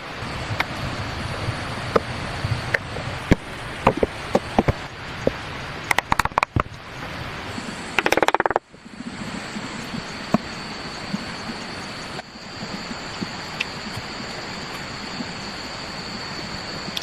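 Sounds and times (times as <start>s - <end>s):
steady background hiss: 0.0s - 17.0s
sharp knocks and snaps: 5.9s - 6.7s
rattling run of clicks: 8.0s - 8.6s.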